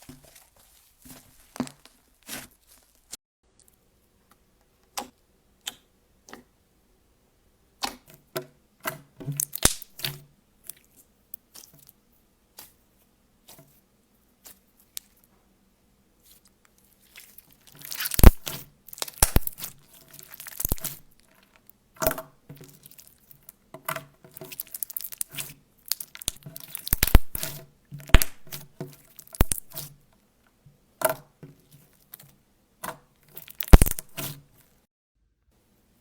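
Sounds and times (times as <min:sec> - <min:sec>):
slime crackling and popping: 0:09.4 - 0:10.1, 0:17.0 - 0:21.6, 0:22.6 - 0:23.5, 0:24.3 - 0:29.9, 0:33.3 - 0:34.4.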